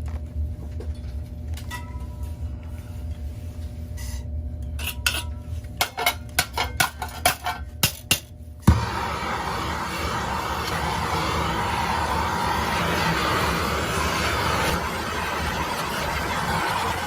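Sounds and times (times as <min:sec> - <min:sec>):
steady rushing noise: 0:08.7 - 0:17.0.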